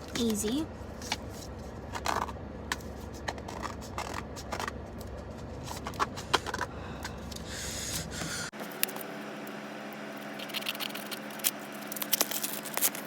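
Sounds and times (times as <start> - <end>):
packaging crinkling: 10.3 - 13.0
packaging rustling: 10.3 - 13.0.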